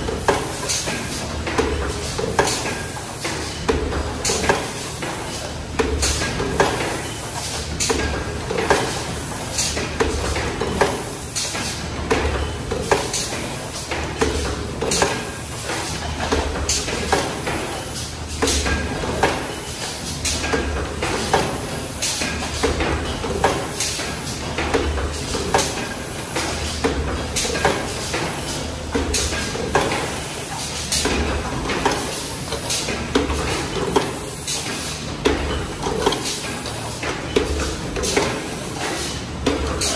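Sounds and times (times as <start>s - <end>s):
press machine knocking: 31.0s - 39.9s.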